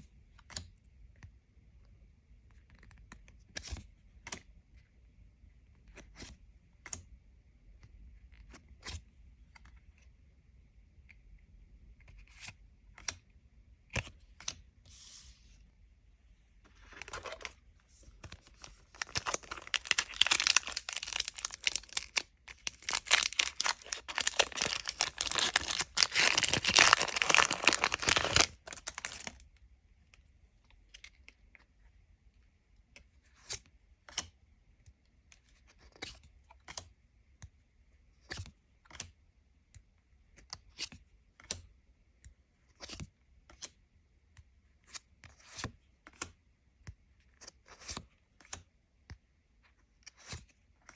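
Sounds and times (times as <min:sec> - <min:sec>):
cards clicking and tapping: 0:18.2 - 0:29.4
foil wrapper tearing and crinkling: 0:18.9 - 0:29.4.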